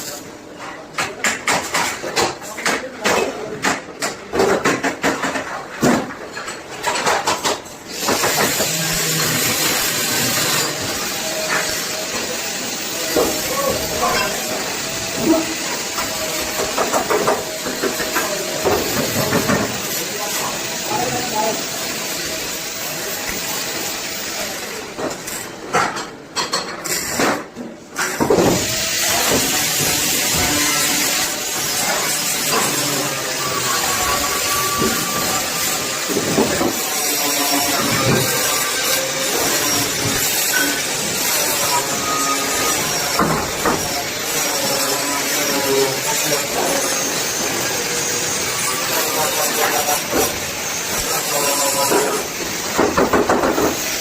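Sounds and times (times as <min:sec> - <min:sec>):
sharp knocks and clatter: 0:00.6 - 0:10.7, 0:51.9 - 0:54.0.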